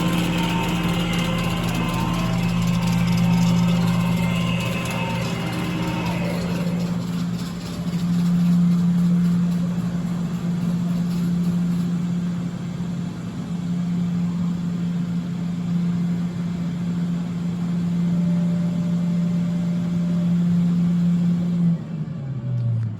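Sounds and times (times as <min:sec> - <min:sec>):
rushing noise: 0:00.0 - 0:10.7
floor scrubber humming: 0:00.0 - 0:14.3.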